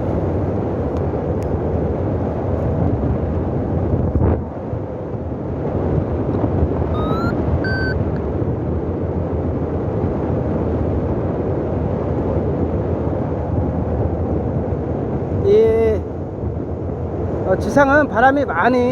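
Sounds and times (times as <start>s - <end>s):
wind buffeting microphone: 0.0s - 18.9s
short high-pitched beeps: 6.9s - 8.0s.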